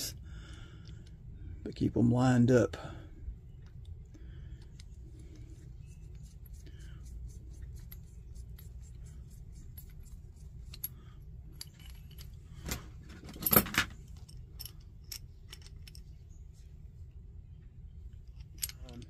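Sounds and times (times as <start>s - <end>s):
small metal parts clicking: 3.5s - 16.2s, 18.1s - 19.0s
metal clatter: 7.7s - 16.2s.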